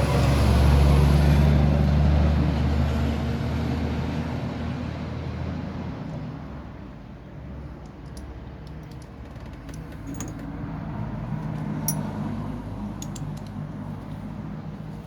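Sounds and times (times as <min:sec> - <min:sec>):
metallic clicks of hand tools: 0:13.0 - 0:13.6.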